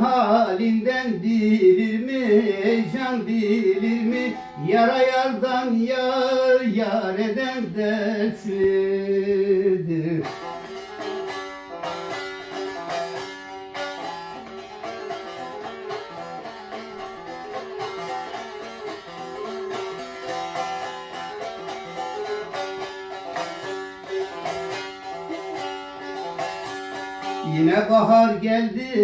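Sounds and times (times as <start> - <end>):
plucked string instrument folk tune: 0.0 - 29.0.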